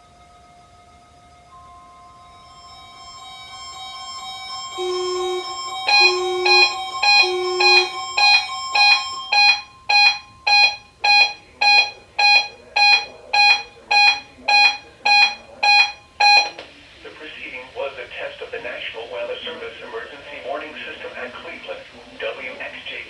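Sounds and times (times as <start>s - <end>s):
steady warning alarm tone: 0.0s - 16.7s
radio alarm beeping: 2.9s - 16.7s.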